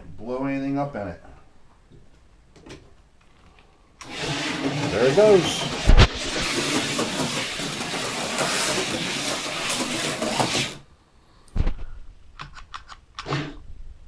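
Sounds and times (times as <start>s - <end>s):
slot car whirring rattle: 4.0s - 10.8s.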